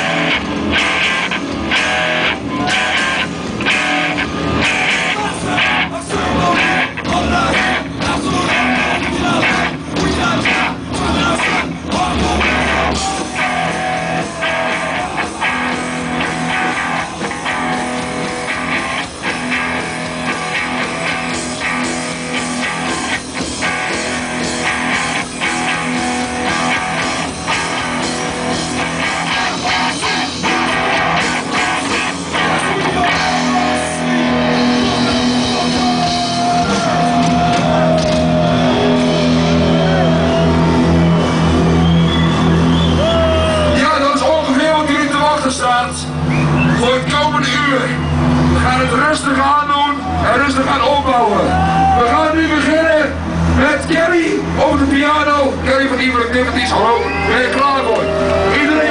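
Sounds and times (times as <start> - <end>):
loud music with driving beat: 0.0 - 42.7.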